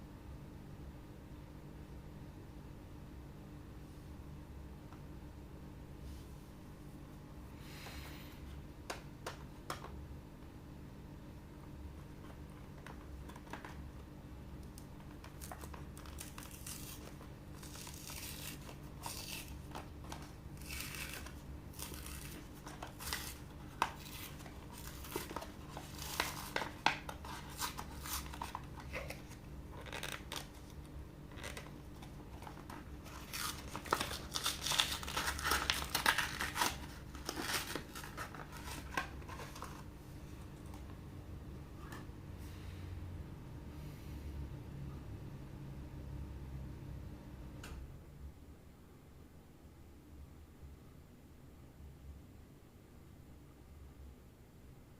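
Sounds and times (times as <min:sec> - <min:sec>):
packaging tearing and crinkling: 0:15.1 - 0:39.9.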